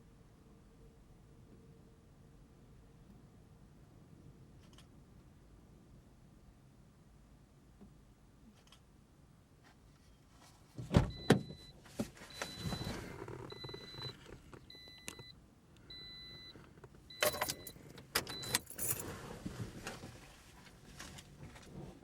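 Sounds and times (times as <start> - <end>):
rustling in a car: 9.6 - 22.0
car warning chime beeping: 11.1 - 19.0.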